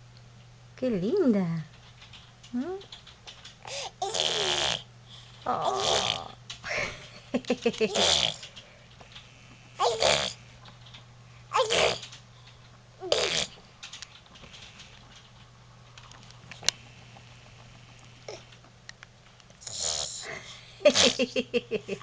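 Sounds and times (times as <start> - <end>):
baby making noisy mouth sounds: 3.7 - 4.9, 5.5 - 6.4, 7.9 - 8.4, 9.8 - 10.4, 11.5 - 12.1, 13.0 - 13.6.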